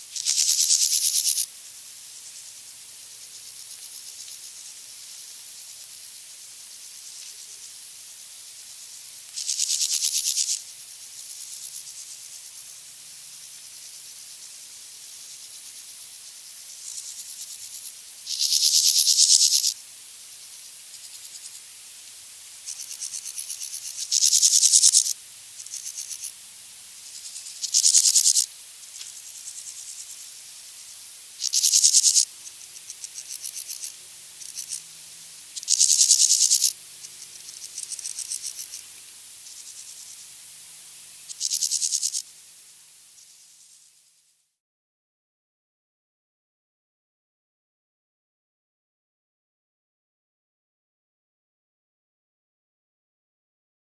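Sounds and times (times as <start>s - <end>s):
soft grasshopper chirps: 0.0s - 44.6s
grasshopper buzzing: 0.1s - 1.5s, 6.8s - 12.7s, 13.4s - 19.8s, 20.4s - 43.9s.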